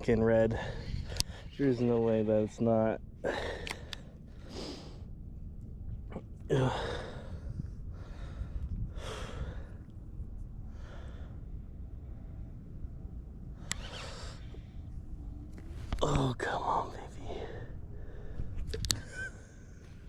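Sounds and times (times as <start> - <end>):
low rumble: 0.0 - 20.0
man exhaling and sighing: 3.2 - 5.0, 6.4 - 9.7.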